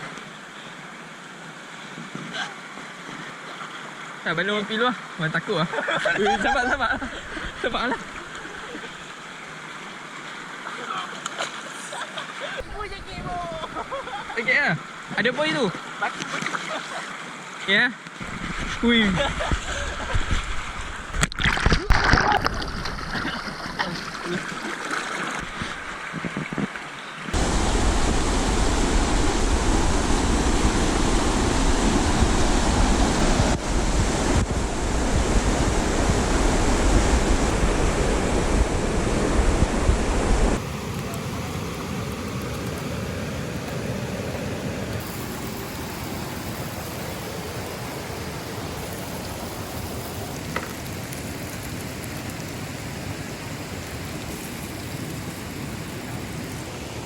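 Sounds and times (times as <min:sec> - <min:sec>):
flowing river water: 0:00.0 - 0:57.0
deep rumble: 0:27.4 - 0:40.6.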